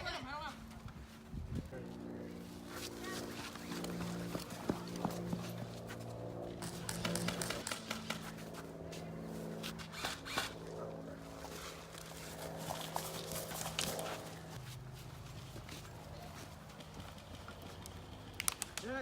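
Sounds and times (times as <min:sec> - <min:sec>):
steady low hum: 0:00.0 - 0:18.8
airsoft guns firing: 0:06.6 - 0:08.2.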